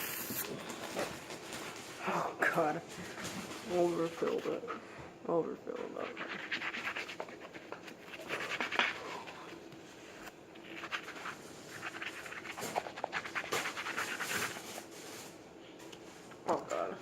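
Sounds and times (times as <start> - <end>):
brush scrubbing a sneaker: 5.7 - 9.6, 10.6 - 15.3.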